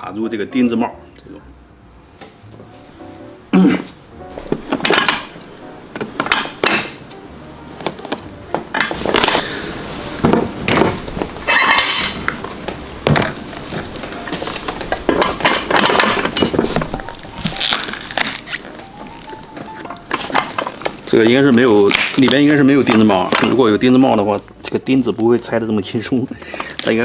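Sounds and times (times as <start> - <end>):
metal tool clinking and scraping: 11.5 - 12.3.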